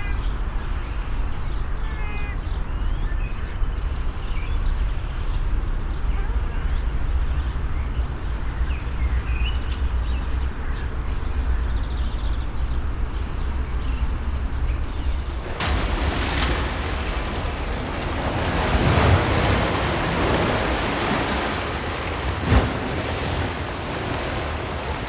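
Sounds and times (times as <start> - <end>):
deep rumbling noise: 13.2 - 25.0.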